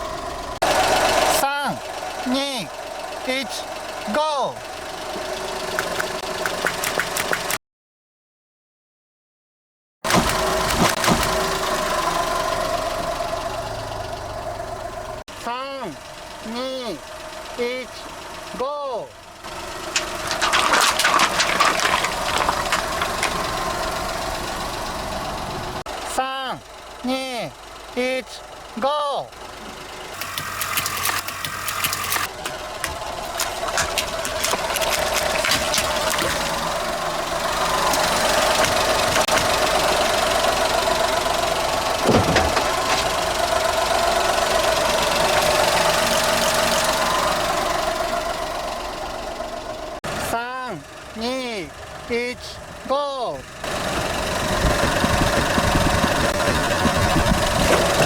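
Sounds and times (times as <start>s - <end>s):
car engine idling: 0.0s - 7.6s, 10.1s - 58.0s
water balloons popping: 5.7s - 7.6s, 20.0s - 23.7s, 32.2s - 36.9s, 37.6s - 39.8s.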